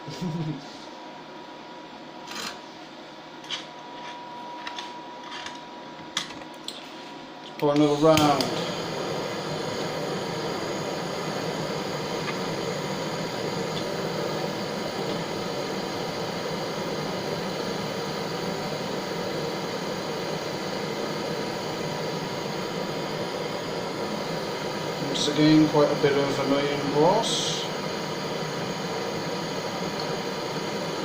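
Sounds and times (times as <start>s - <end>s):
gas torch flame rushing: 7.7s - 31.0s.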